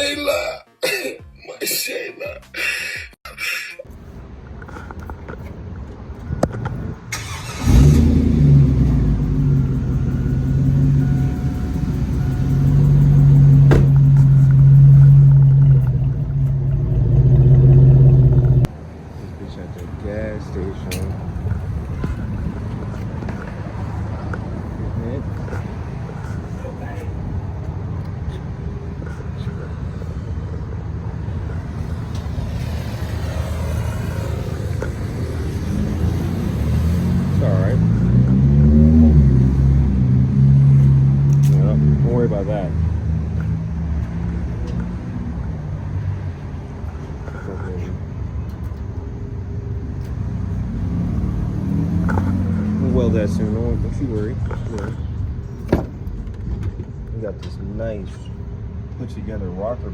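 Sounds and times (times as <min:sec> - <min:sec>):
truck engine rumbling: 0:02.5 - 0:58.6
pickup engine starting and idling: 0:07.0 - 0:18.7.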